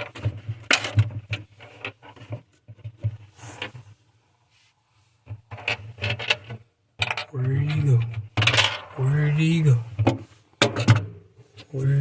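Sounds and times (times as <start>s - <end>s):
low steady hum: 7.3s - 10.4s, 11.5s - 12.0s.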